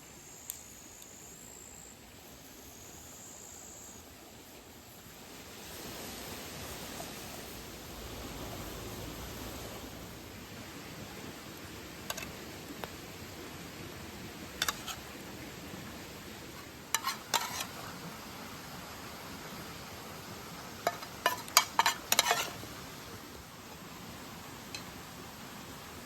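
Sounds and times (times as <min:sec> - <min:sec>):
steady hiss: 0:00.0 - 0:26.0
utensils and dishes clinking: 0:20.9 - 0:22.6.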